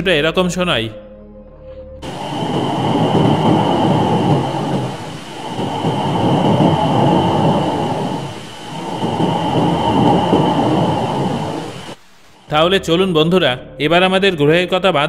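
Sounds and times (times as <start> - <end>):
dense rushing noise: 2.0 - 12.6.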